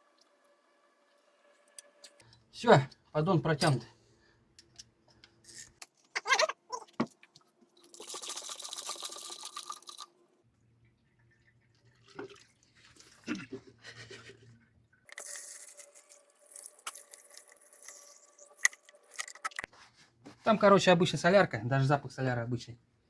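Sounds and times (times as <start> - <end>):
liquid pouring with a hiss: 7.9 - 10.1.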